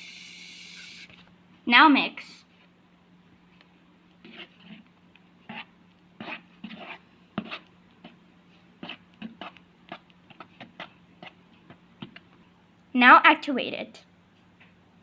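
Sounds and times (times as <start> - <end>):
slime squelching while stirred: 3.4 - 12.5.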